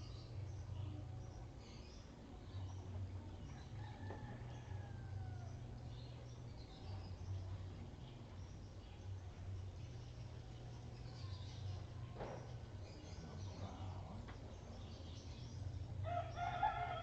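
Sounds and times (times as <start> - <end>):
small birds chirping: 0.0 - 17.0
steady low hum: 0.0 - 17.0
rooster crowing: 3.6 - 5.7, 16.0 - 17.0.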